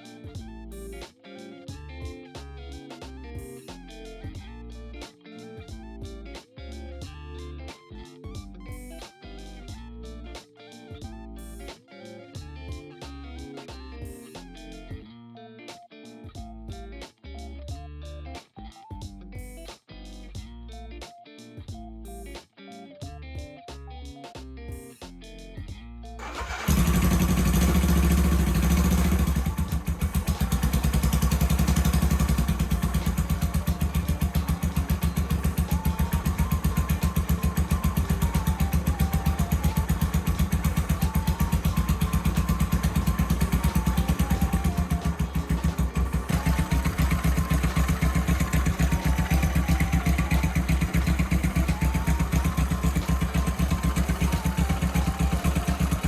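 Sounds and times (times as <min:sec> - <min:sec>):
motorcycle engine idling: 0:26.2 - 0:56.0.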